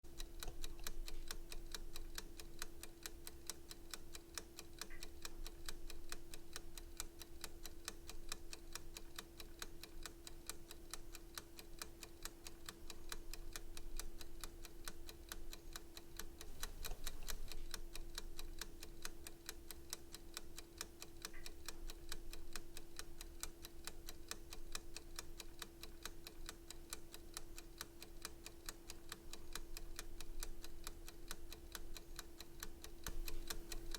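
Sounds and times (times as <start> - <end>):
timer ticking: 0.1 - 33.9
steady hum: 16.5 - 17.7, 33.0 - 33.9.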